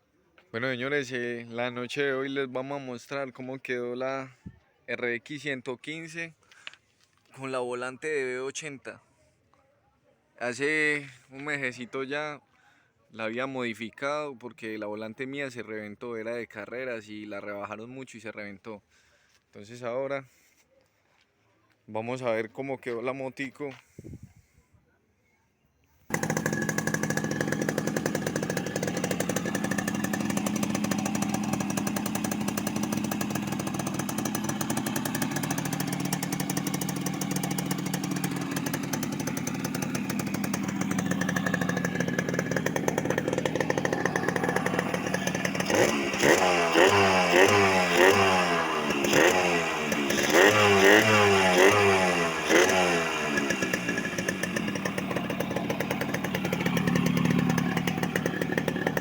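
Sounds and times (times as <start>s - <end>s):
two-stroke motorcycle engine revving: 26.1s - 59.0s.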